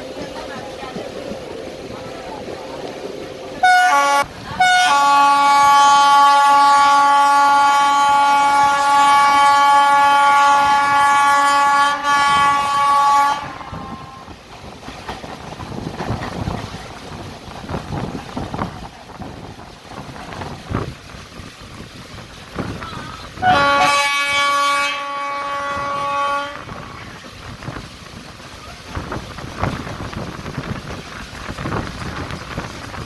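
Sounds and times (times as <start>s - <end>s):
train running noise: 0.0s - 33.0s
locomotive horn blast: 3.6s - 14.4s, 23.3s - 27.4s.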